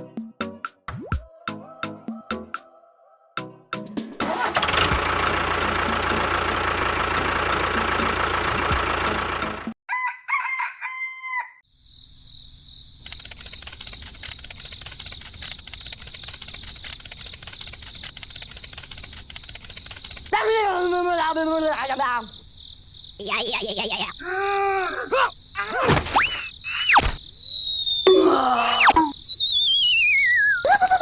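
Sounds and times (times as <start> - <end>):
rooster crowing: 9.9 - 11.6
rapid ticking: 13.1 - 20.4.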